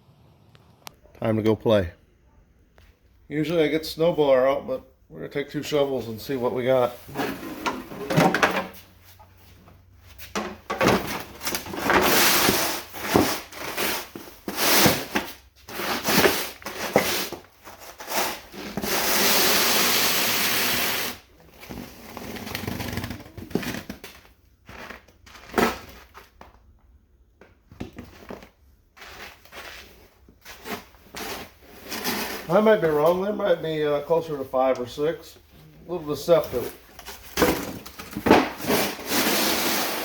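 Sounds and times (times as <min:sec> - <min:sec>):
snow shovel scraping snow: 0:38.6 - 0:40.0.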